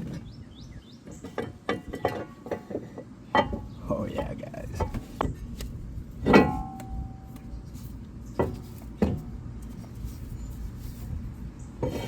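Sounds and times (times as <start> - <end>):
metal clank: 6.2 - 7.4
metal knocks: 6.2 - 7.5.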